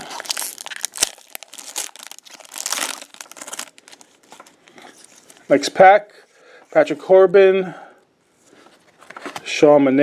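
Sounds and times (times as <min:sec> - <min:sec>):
card pack wrapper crinkling: 0:00.0 - 0:05.5.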